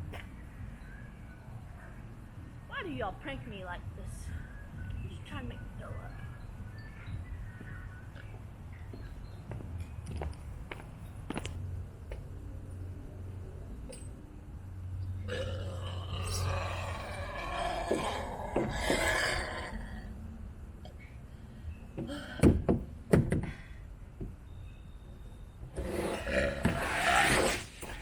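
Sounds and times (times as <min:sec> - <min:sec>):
long burps: 0:15.2 - 0:20.0.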